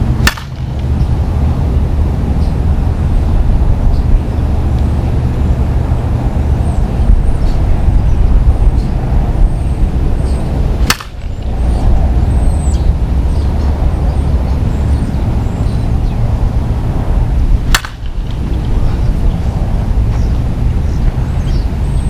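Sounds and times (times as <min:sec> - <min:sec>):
wind rumble on microphone: 0:00.0 - 0:22.0
softball bat cracking: 0:00.1 - 0:01.0, 0:10.8 - 0:11.8, 0:17.5 - 0:19.0.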